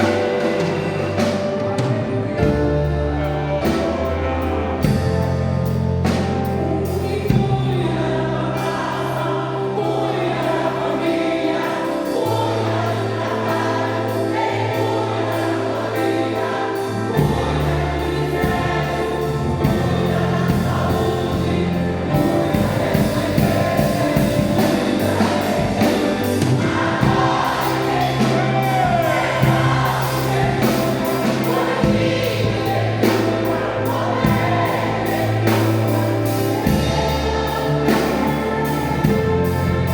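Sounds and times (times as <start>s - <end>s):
band accompaniment: 0.0s - 39.9s
choir singing a gospel hymn: 0.0s - 39.9s.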